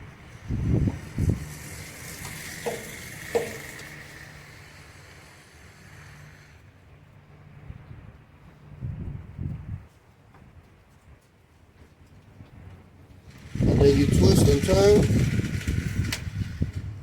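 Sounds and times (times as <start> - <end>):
steady hiss: 0.5 - 6.8
dull thumps: 2.6 - 4.0.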